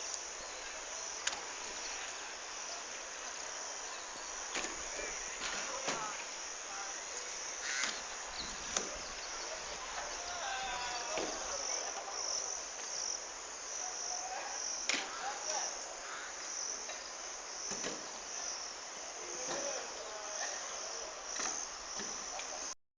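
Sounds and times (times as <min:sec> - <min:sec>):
insects chirping: 0:00.0 - 0:22.8
faint bird calls: 0:07.5 - 0:12.4, 0:15.0 - 0:17.1.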